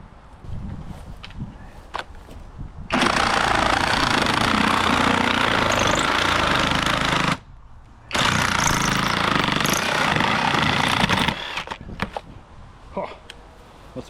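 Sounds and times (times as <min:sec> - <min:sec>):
reciprocating saw cutting: 0:02.9 - 0:07.4.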